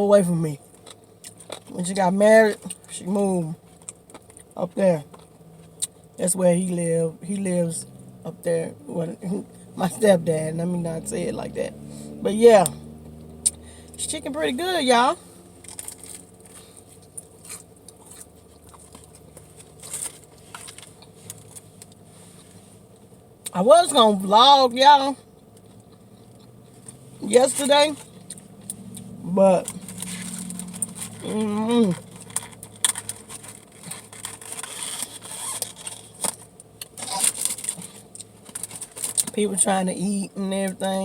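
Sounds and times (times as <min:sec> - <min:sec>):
person chewing fried chicken: 0:15.6 - 0:22.0
crisp crunches: 0:15.6 - 0:22.6, 0:28.0 - 0:39.4.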